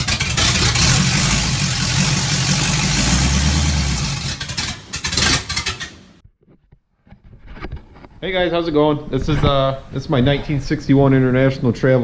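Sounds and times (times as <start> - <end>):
vehicle engine running loudly: 0.0 - 5.9.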